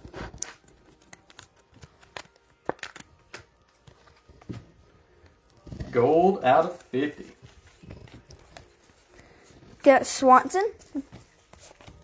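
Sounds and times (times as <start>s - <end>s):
trading cards flipped by hand: 0.0s - 4.5s, 11.0s - 12.0s.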